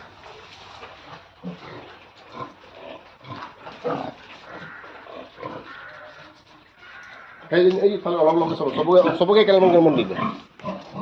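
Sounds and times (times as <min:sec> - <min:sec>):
pigs grunting: 0:00.0 - 0:11.0.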